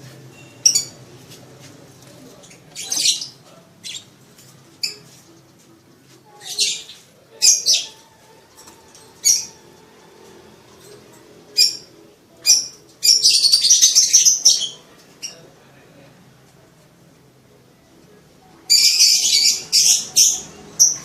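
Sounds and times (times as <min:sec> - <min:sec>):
lovebird chirping: 0:00.3 - 0:01.0, 0:08.9 - 0:15.4, 0:18.7 - 0:21.0.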